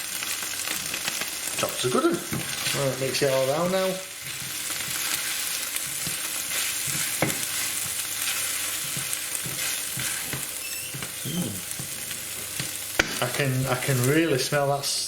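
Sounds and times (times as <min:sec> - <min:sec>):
spices sizzling in oil: 0:00.0 - 0:15.0
utensil scraping pan: 0:02.3 - 0:03.5, 0:04.2 - 0:13.2.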